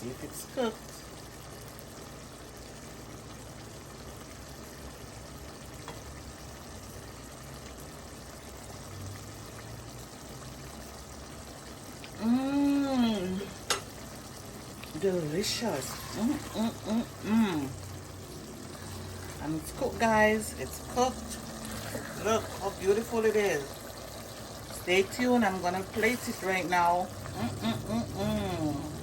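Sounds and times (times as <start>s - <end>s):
steam hissing in a pot: 0.0s - 29.0s
person humming mmm: 15.9s - 19.2s, 21.1s - 22.5s, 27.2s - 29.0s.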